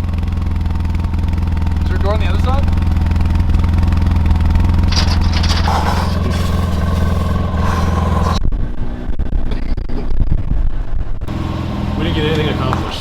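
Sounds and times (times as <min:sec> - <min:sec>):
engine idling: 0:00.0 - 0:08.4, 0:11.3 - 0:13.0
scraping and rustling: 0:04.7 - 0:08.4.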